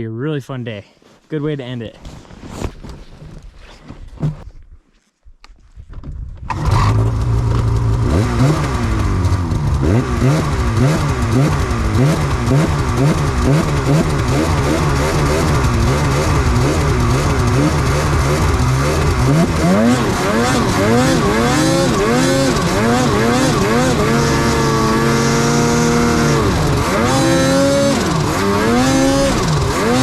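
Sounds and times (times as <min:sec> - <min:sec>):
snowmobile engine revving: 0:06.5 - 0:30.0.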